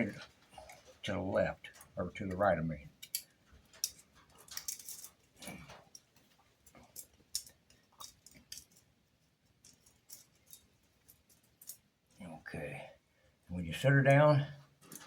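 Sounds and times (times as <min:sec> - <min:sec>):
chainsaw chain clicking and rattling: 0:01.7 - 0:11.9.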